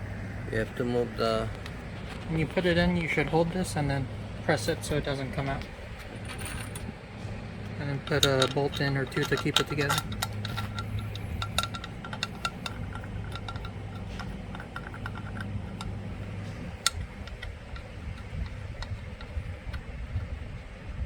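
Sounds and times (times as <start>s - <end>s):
steady low hum: 0.0s - 21.0s
metallic clicks of hand tools: 7.8s - 19.8s.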